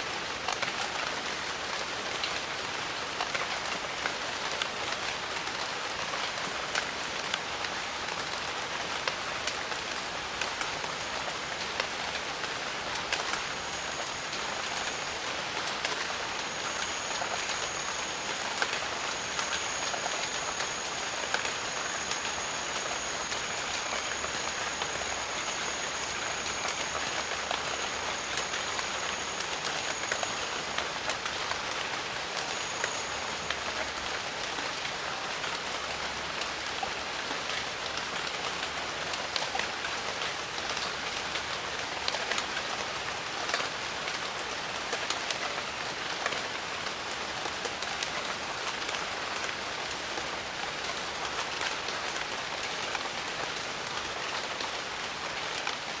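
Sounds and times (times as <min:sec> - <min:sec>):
heavy rain: 0:00.0 - 0:56.0
raindrops striking: 0:08.2 - 0:33.9
thin high steady tone: 0:08.2 - 0:34.2.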